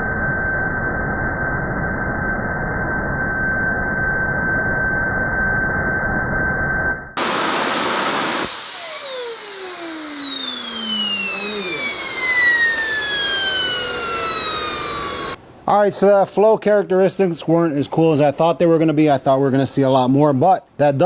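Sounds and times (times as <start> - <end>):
turbojet engine whine: 0.0 - 15.4.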